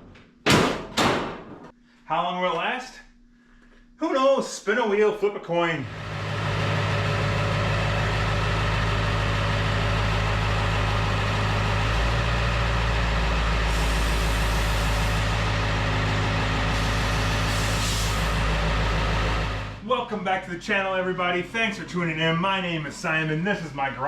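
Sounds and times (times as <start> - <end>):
diesel engine idling: 5.8 - 19.8.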